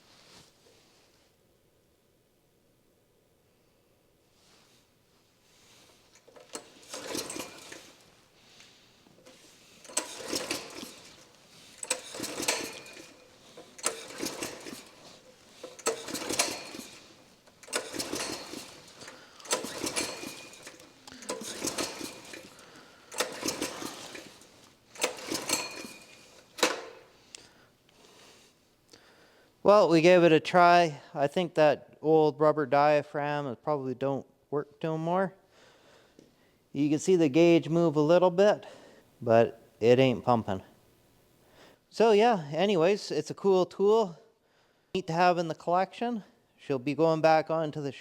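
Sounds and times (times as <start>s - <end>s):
engine pump rattling and clicking: 6.2s - 8.0s, 9.2s - 27.0s.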